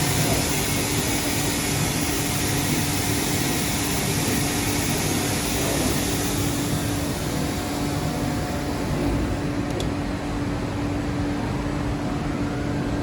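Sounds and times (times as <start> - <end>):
grinder machine humming: 0.0 - 9.8.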